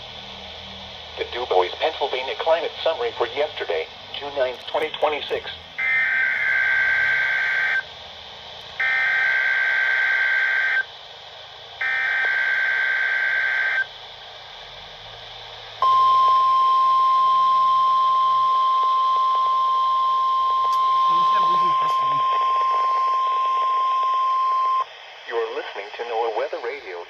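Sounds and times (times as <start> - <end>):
light radio hiss: 0.0 - 27.0
steady warning alarm tone: 5.8 - 7.8, 8.8 - 10.9, 11.8 - 13.9, 15.8 - 24.8.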